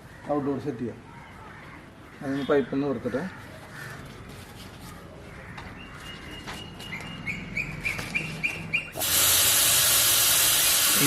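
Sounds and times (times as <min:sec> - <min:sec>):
gas hissing from pipe: 0:09.0 - 0:11.0.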